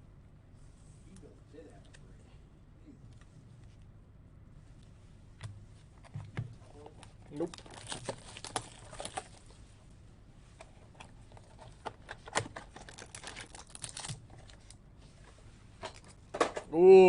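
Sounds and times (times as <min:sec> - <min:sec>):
cards and wrappers clicking and crinkling: 0:06.0 - 0:09.5, 0:10.6 - 0:14.8.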